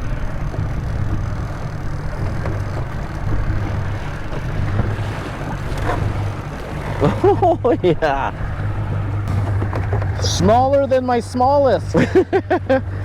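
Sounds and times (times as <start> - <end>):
water washing: 0.0 - 12.6
outboard motor running: 0.0 - 13.0
wind: 0.0 - 13.0.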